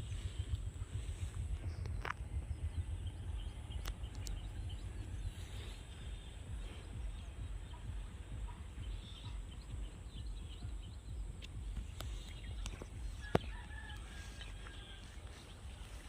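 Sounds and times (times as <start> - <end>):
chickens calling: 0.0 - 16.0
low outdoor rumble: 0.0 - 16.0
sharp clicks: 3.8 - 4.5.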